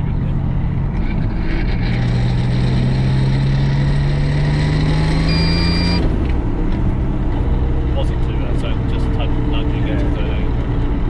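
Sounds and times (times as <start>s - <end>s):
car engine revving up: 0.0s - 11.0s
high warning beep: 5.2s - 6.1s.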